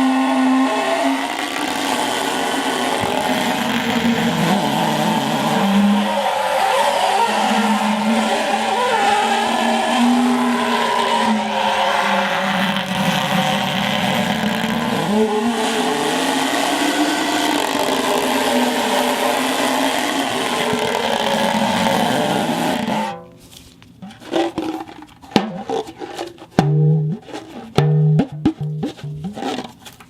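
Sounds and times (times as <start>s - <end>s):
rubber squealing: 0.0s - 23.4s, 24.0s - 29.9s
twanging plucked notes: 25.4s - 25.9s, 26.5s - 29.6s.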